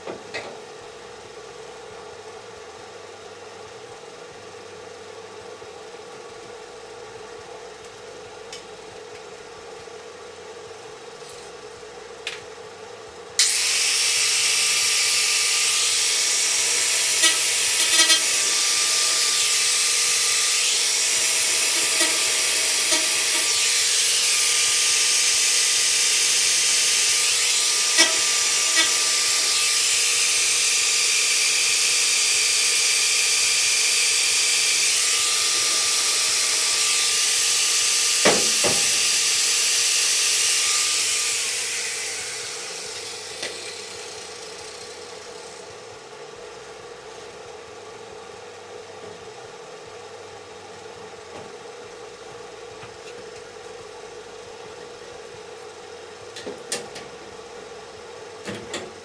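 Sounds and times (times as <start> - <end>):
power tool hissing and whining: 13.4 - 46.1.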